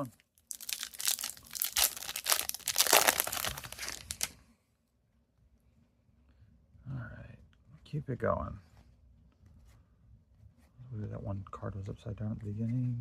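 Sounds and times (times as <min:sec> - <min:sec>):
wrapper tearing and crinkling: 0:00.4 - 0:04.4.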